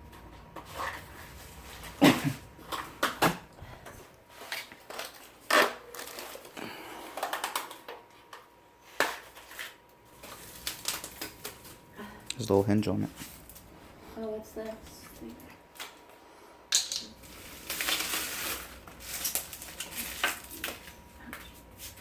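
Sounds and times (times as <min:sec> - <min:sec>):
packaging rustling: 0:04.3 - 0:07.9, 0:09.0 - 0:11.9, 0:17.2 - 0:22.0
bicycle parts clicking and knocking: 0:16.7 - 0:17.1.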